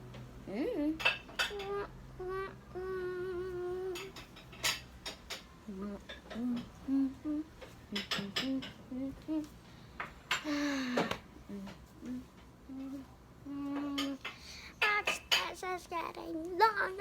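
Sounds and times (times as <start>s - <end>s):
child humming: 0.5s - 4.2s, 5.7s - 9.5s, 10.5s - 14.3s
utensils clinking on dishes: 3.9s - 5.5s, 7.9s - 8.8s.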